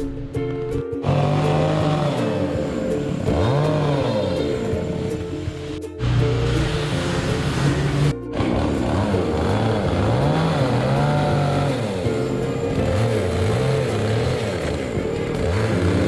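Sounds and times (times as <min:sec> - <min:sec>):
power carving tool cutting wood: 0:06.8 - 0:16.0.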